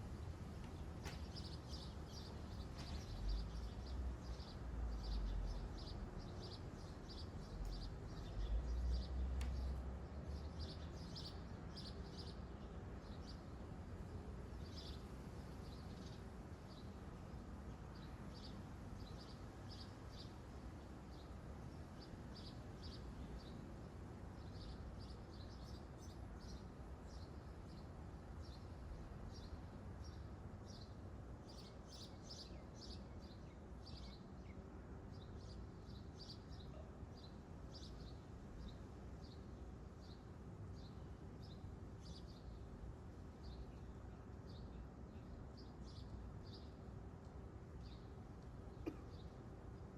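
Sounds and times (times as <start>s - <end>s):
small birds chirping: 0.7s - 13.4s.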